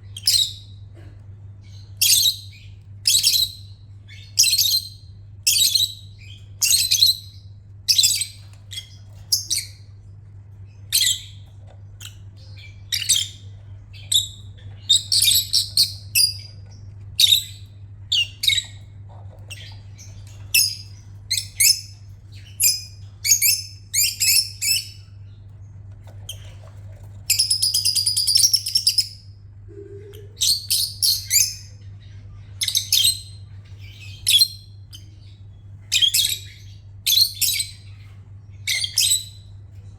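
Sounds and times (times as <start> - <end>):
faint low hum: 0.0 - 39.9.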